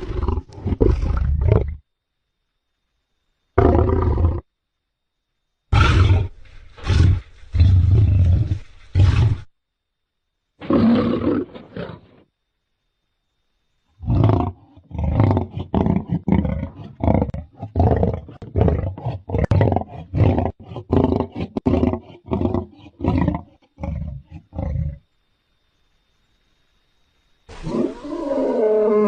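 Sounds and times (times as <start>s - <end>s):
big cat roaring grunts: 14.0s - 25.0s.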